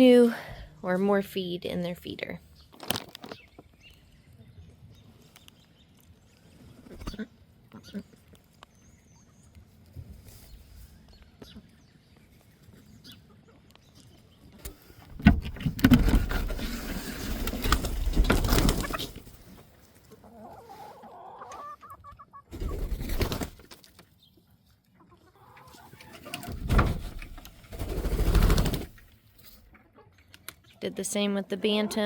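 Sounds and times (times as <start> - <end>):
chickens clucking: 12.5 - 15.0, 16.3 - 23.4, 24.0 - 26.6, 28.6 - 32.0.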